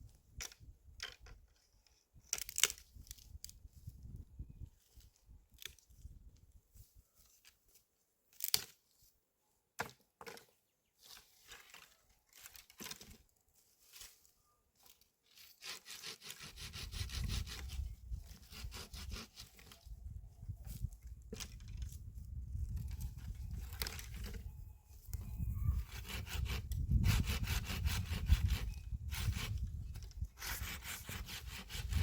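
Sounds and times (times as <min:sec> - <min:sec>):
wood scraping and rubbing: 0:15.6 - 0:19.8, 0:25.8 - 0:32.0.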